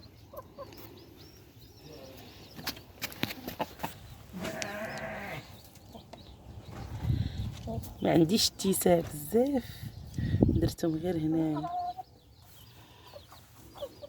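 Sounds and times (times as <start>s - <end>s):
farm animal calling: 3.4s - 6.1s, 11.4s - 14.0s.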